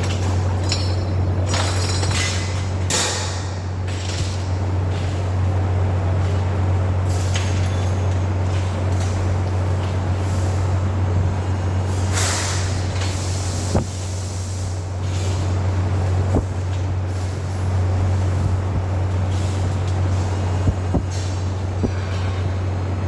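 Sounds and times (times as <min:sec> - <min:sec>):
short hiss of escaping air: 0:12.1 - 0:14.7.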